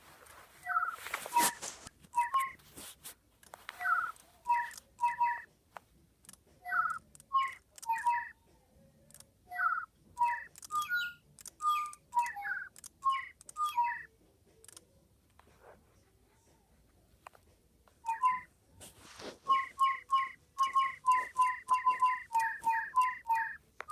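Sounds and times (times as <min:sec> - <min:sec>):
toy birds tweeting: 0:00.6 - 0:02.6, 0:03.6 - 0:05.5, 0:06.6 - 0:14.1, 0:18.0 - 0:18.5, 0:19.4 - 0:23.9.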